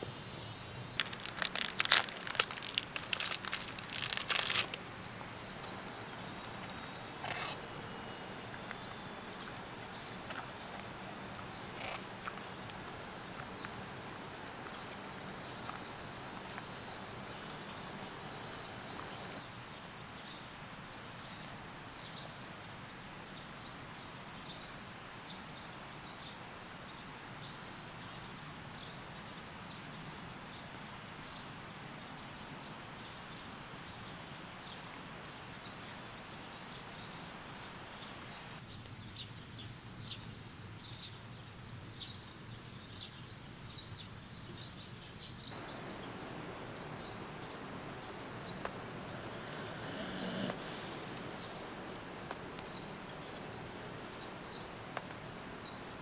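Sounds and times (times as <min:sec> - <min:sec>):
insect drone: 0:00.0 - 0:38.6, 0:45.5 - 0:56.0
creek water rushing: 0:00.7 - 0:19.4, 0:45.6 - 0:56.0.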